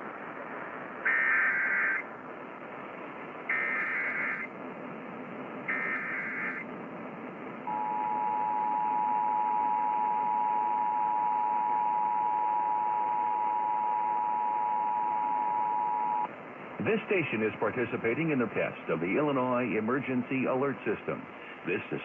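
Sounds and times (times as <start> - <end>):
radio hiss: 0.0 - 22.0
two-tone attention signal: 7.7 - 16.3.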